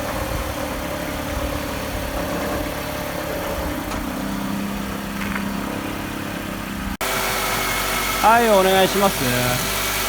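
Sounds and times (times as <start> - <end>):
car engine idling with low rumble: 0.0 - 7.0.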